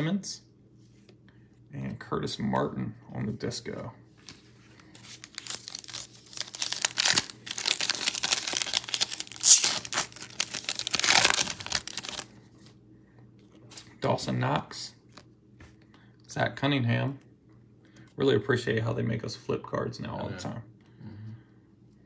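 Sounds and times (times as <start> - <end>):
wrapper tearing and crinkling: 4.9 - 12.3.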